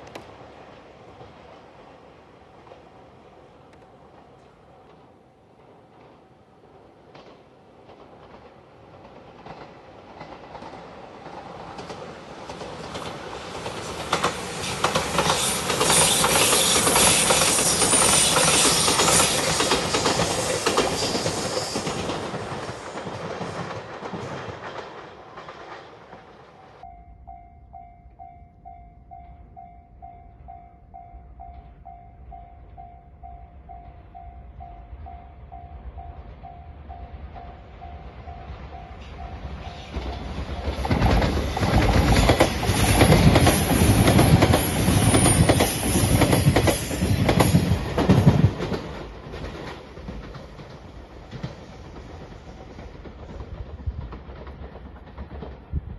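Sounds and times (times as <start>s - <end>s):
electric train passing: 0.0s - 55.9s
wheels clattering over rail joints: 7.0s - 26.8s, 39.0s - 55.8s
level crossing warning bell: 26.8s - 41.4s.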